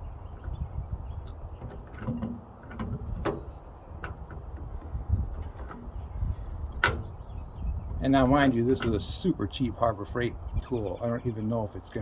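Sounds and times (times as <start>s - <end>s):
rivet tool metal clicks and creaks: 1.2s - 7.2s, 8.1s - 9.2s.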